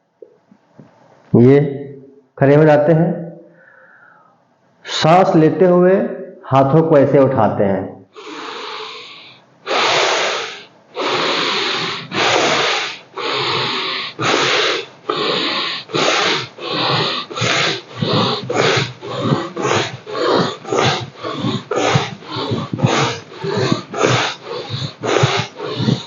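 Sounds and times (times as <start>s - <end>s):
man breathing hard: 3.5s - 5.1s, 8.2s - 26.0s.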